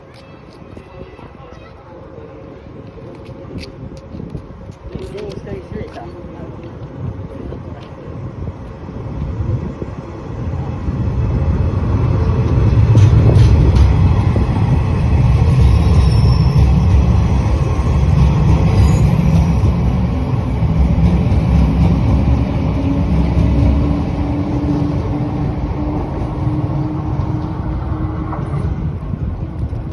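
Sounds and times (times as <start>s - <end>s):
electric train rumbling: 0.0s - 29.9s.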